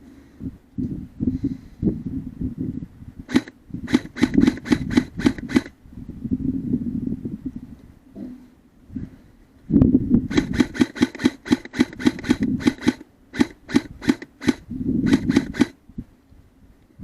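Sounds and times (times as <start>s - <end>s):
airsoft gun firing shots: 3.3s - 5.7s, 10.3s - 15.8s.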